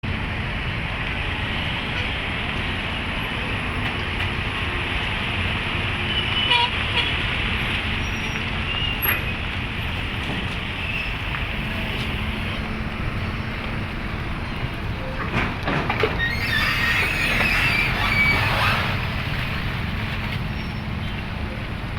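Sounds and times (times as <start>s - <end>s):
diesel engine drone: 0.0s - 21.9s
machinery clanks and squeaks: 8.0s - 21.5s.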